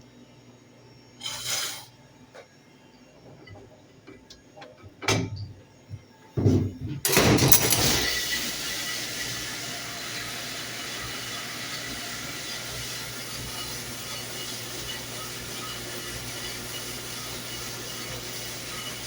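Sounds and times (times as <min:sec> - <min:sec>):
dishwasher clunks: 0:06.4 - 0:08.1.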